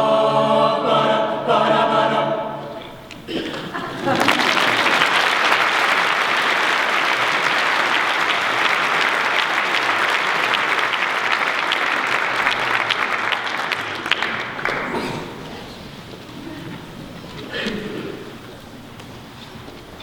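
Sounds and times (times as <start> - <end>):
audience applauding: 3.9 - 15.8.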